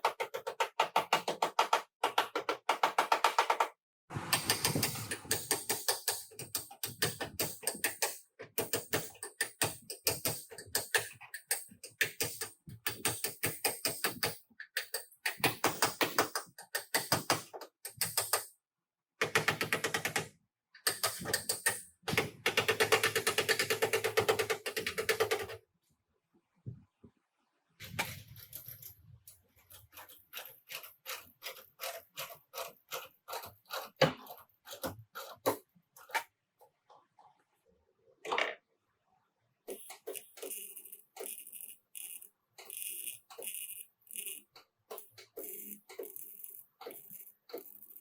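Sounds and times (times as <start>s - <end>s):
rapid tapping of tools: 4.4s - 18.5s, 29.7s - 36.3s, 39.7s - 48.0s.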